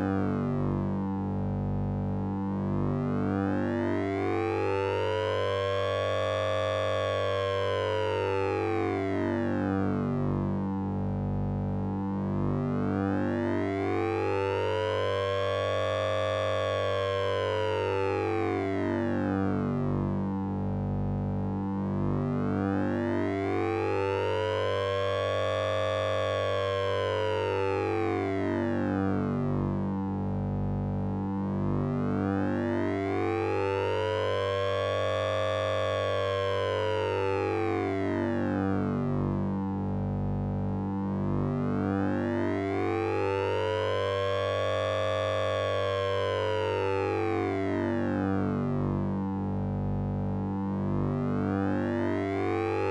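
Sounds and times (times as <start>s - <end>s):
synthesized low drone: 37.3s - 52.9s.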